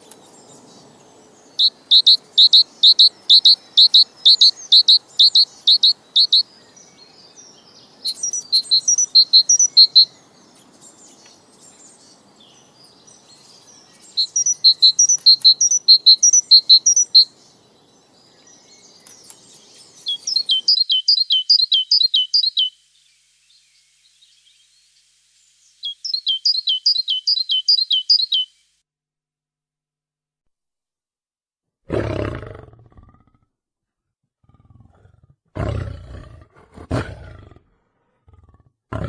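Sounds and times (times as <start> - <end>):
songbird singing: 0.0 - 28.8.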